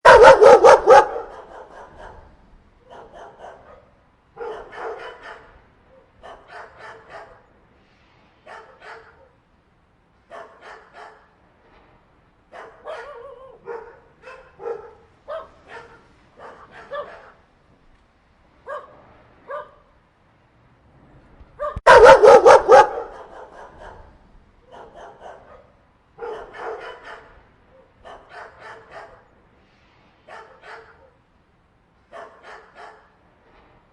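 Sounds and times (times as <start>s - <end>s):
dogs barking: 0.0s - 7.4s, 8.5s - 9.4s, 10.3s - 11.3s, 12.5s - 17.4s, 18.7s - 19.8s, 21.6s - 29.3s, 30.3s - 31.2s, 32.1s - 33.2s.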